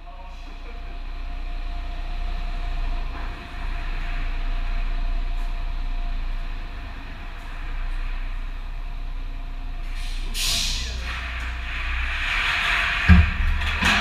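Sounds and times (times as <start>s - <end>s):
diesel truck engine rumbling: 0.0s - 14.0s.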